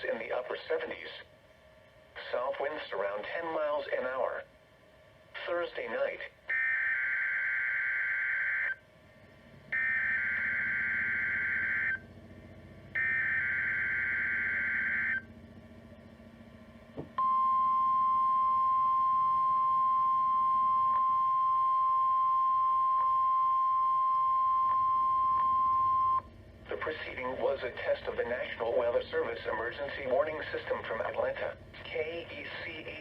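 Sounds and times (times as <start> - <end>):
steady warning alarm tone: 6.5 - 8.8, 9.7 - 12.1, 12.9 - 15.3, 17.2 - 26.3.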